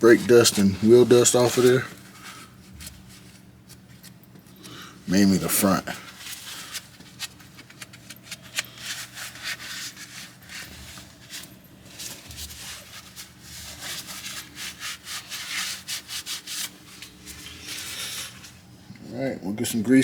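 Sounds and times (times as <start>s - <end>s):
scrubbing strokes on metal: 8.5s - 18.6s.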